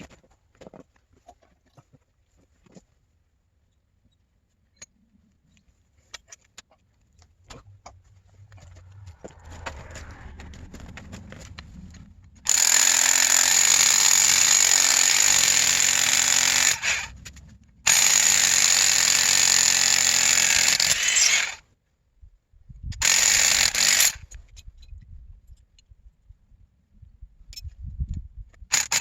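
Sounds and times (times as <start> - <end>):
power tool running: 12.4 - 17.1, 17.9 - 21.6, 23.0 - 24.2, 28.7 - 29.0.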